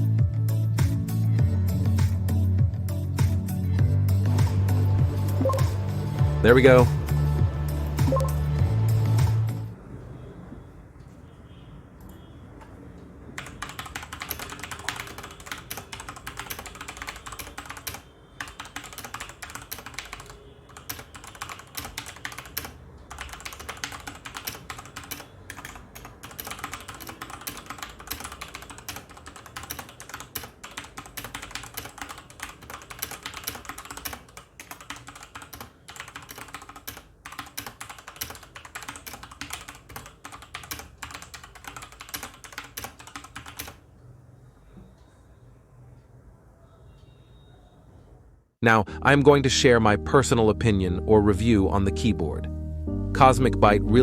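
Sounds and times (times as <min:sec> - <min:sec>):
mechanical keyboard typing: 0:08.1 - 0:08.4, 0:13.3 - 0:43.8.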